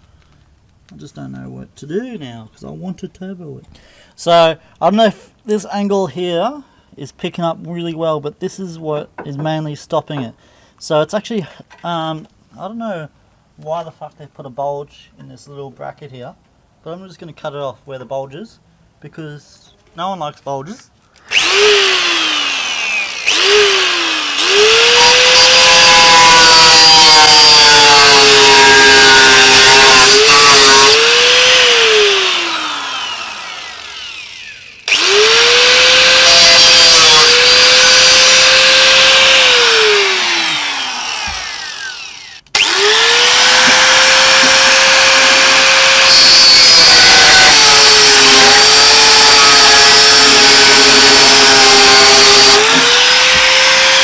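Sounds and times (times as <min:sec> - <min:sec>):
angle grinder cutting metal: 0:21.3 - 0:54.0.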